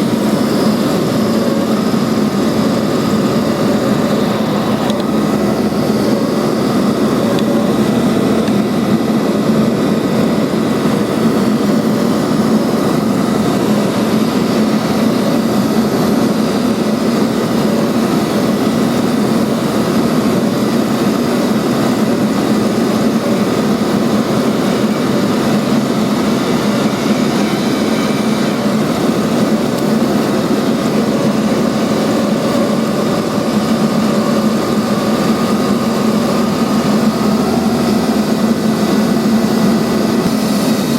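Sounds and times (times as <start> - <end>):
robot vacuum motor drone: 0.0 - 40.9.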